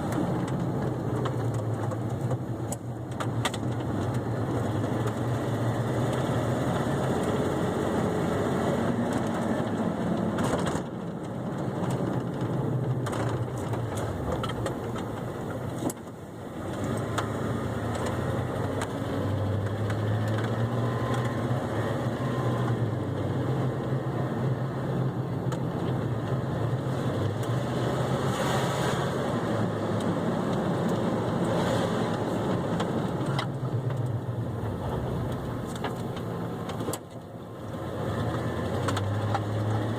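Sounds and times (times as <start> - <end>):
pickup engine running while driving: 0.0 - 39.9.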